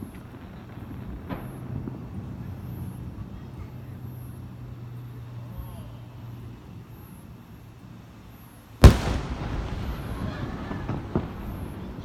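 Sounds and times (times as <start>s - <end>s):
firework bang: 0.0s - 3.0s, 8.8s - 12.0s
small firework pop: 8.8s - 11.9s
echoing noise: 8.8s - 12.0s.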